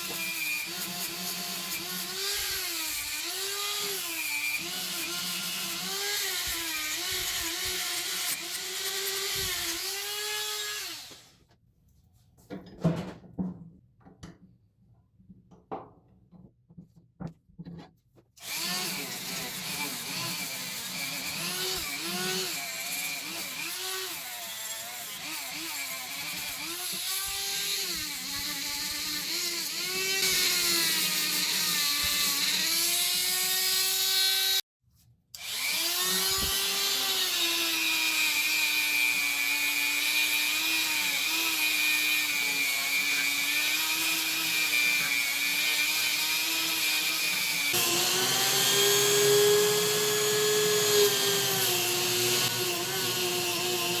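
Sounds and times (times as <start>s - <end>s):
power tool motor whining on metal: 18.4s - 33.3s, 35.4s - 54.0s.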